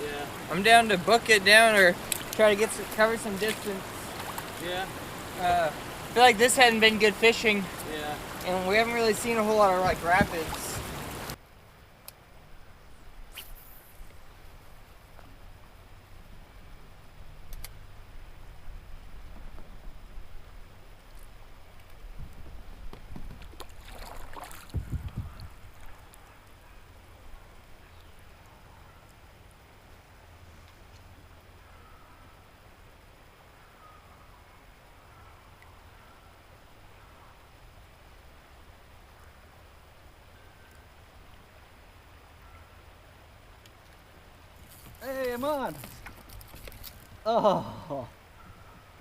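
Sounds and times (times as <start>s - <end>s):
paddle splashes: 0.0s - 11.4s, 23.2s - 24.9s
river water flowing: 0.0s - 19.2s, 22.7s - 49.0s
wind rumble on microphone: 17.0s - 26.2s.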